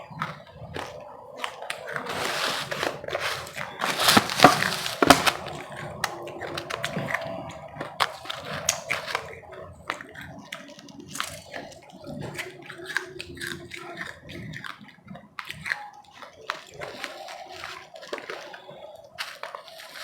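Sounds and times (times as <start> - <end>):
chewing crunchy ice: 0.8 - 5.6.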